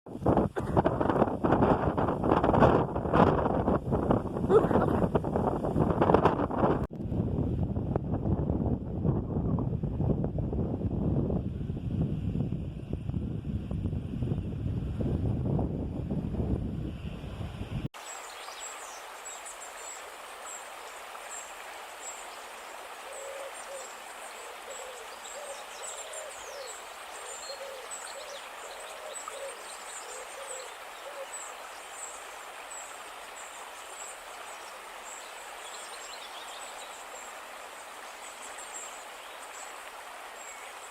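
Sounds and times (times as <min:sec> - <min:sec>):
steady background hiss: 0:18.0 - 0:40.9
bird hooting: 0:23.0 - 0:31.4.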